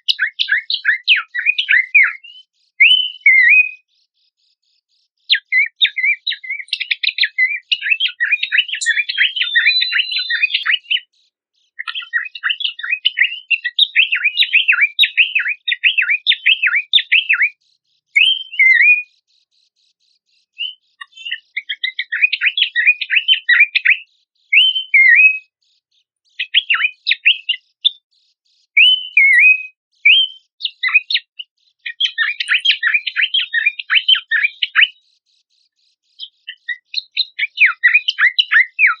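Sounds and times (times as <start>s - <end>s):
slurred bird whistles: 0.0s - 3.9s, 5.3s - 11.1s, 11.7s - 19.2s, 20.5s - 25.6s, 26.4s - 28.0s, 28.7s - 35.0s, 36.1s - 39.0s
bird chattering twittering song: 0.0s - 39.0s.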